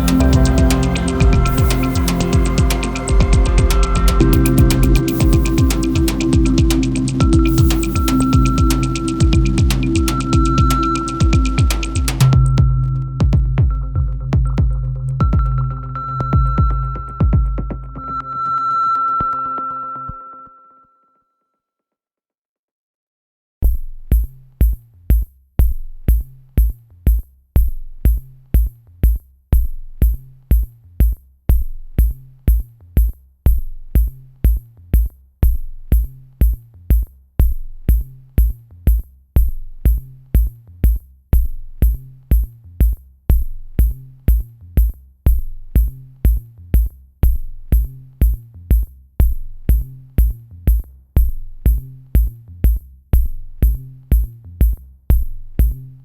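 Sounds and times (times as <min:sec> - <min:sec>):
electronic music with drum beat: 0:00.0 - 0:18.4, 0:41.4 - 0:56.0.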